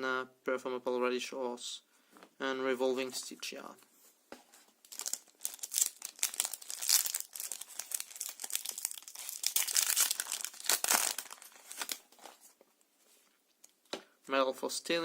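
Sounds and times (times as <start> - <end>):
foil wrapper crinkling and tearing: 4.9 - 12.4.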